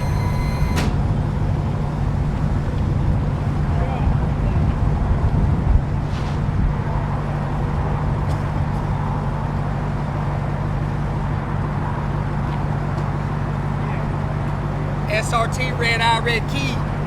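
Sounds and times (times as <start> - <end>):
engine idling: 0.0 - 3.6.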